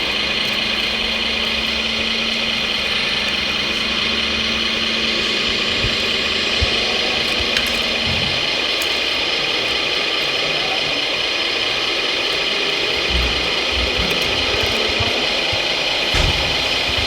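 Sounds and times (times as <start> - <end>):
small electric motors whining: 0.0 - 17.0
low knocks: 13.0 - 17.0.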